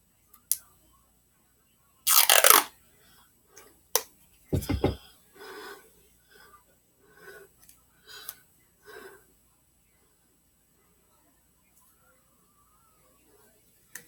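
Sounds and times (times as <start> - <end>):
tape ripped off: 2.1 - 2.7
low knocks of handling: 4.6 - 5.0.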